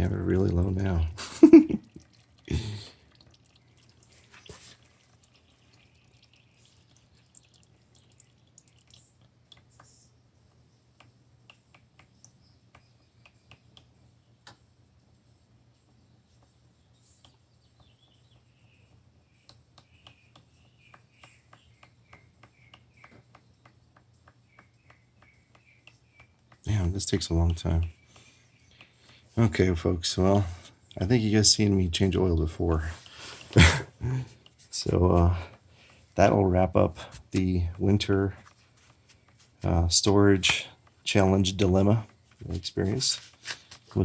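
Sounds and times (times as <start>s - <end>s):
oil dripping into a pan: 1.5s - 9.7s.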